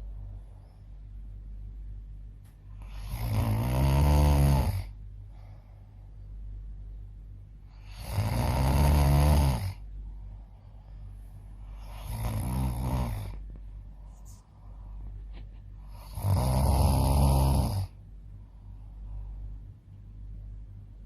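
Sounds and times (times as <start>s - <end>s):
low steady hum: 0.0s - 21.0s
person snoring: 2.8s - 5.0s, 7.7s - 9.9s, 11.7s - 13.4s, 15.9s - 18.0s.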